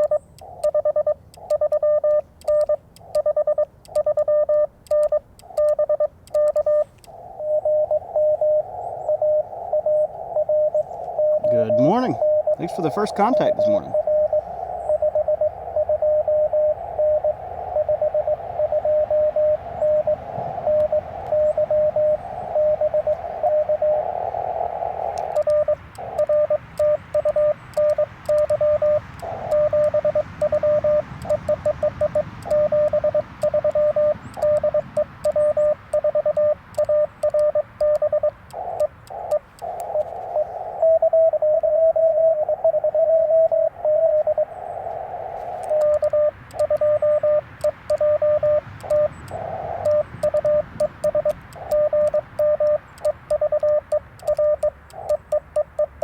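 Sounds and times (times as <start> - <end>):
higher-pitched morse code: 0.0 - 56.0
morse code beeps: 0.0 - 56.0
radio band hiss: 10.9 - 14.8, 48.4 - 53.2.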